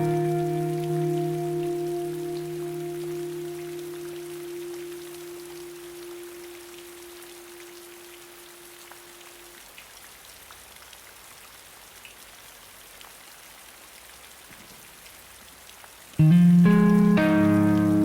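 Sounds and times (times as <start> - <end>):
guitar note ringing: 0.0 - 8.7, 16.2 - 18.0
rain pattering: 0.0 - 18.0.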